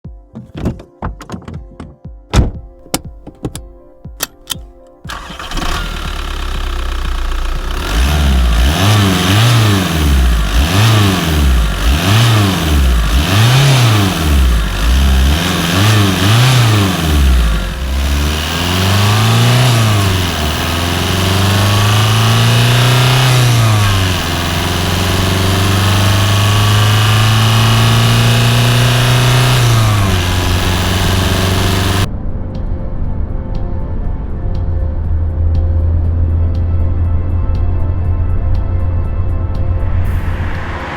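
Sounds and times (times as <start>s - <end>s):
diesel engine revving: 4.2s - 32.1s.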